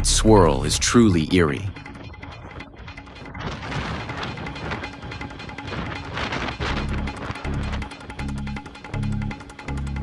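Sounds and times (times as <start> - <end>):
low bass notes: 0.0 - 1.8
ticking percussion: 0.0 - 10.0.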